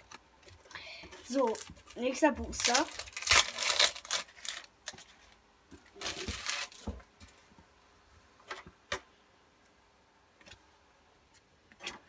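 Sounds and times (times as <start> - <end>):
foil pack tearing and crinkling: 1.3 - 5.0, 6.0 - 6.9.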